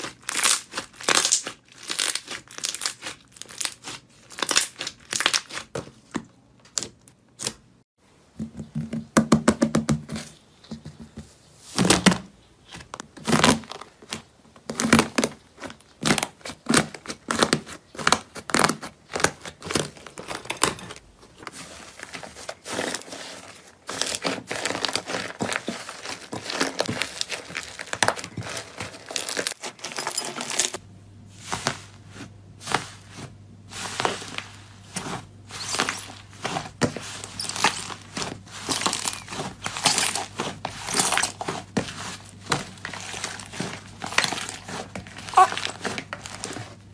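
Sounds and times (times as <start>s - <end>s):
slime crackling and popping: 0.0s - 5.7s.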